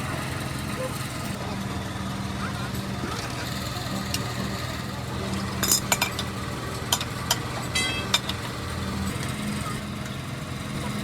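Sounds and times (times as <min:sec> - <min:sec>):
steady engine hum: 0:00.0 - 0:11.0
metal ringing: 0:07.7 - 0:08.4
sharp metallic clinks: 0:07.8 - 0:08.4.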